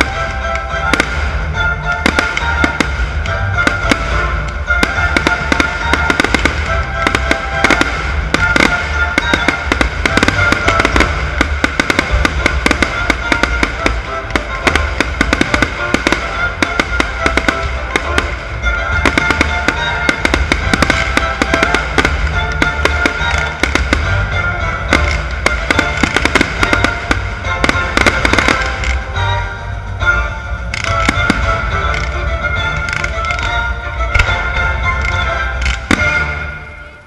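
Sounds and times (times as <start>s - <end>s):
fireworks bursting and crackling: 0.0s - 37.0s
music with sustained tones: 0.0s - 37.0s.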